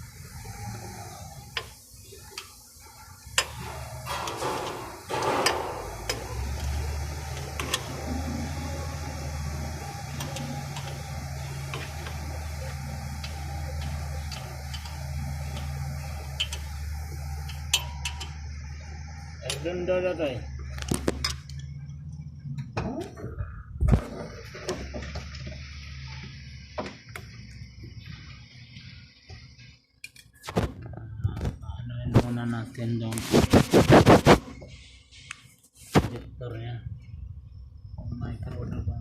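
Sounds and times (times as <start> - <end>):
engine idling: 0.0 - 30.1.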